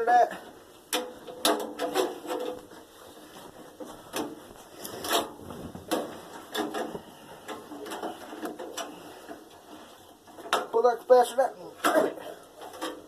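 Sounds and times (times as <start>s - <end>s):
metal clicks and clanks: 0.9s - 2.9s, 4.1s - 10.9s, 11.8s - 13.0s.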